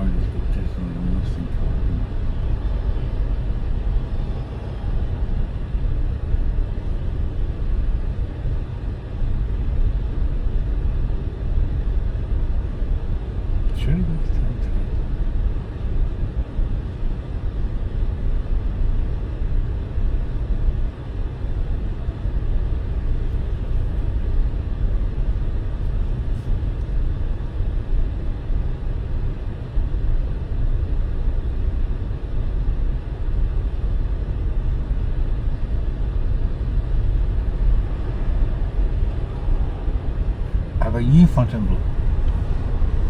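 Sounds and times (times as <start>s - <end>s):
car road and engine rumble: 0.0s - 43.0s.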